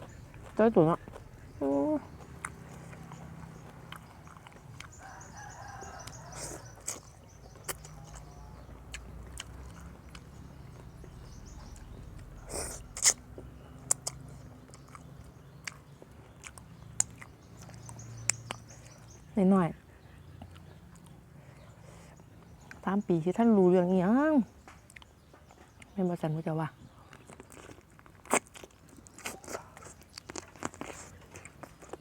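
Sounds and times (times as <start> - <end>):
person chewing and biting: 0.0 - 18.9, 27.2 - 32.0.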